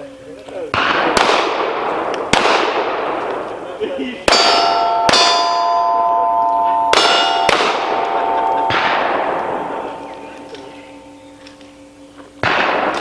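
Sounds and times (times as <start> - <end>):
pistol shots: 0.7 - 6.2, 6.8 - 10.7, 12.4 - 13.0
steel target plate clanging: 4.3 - 13.0.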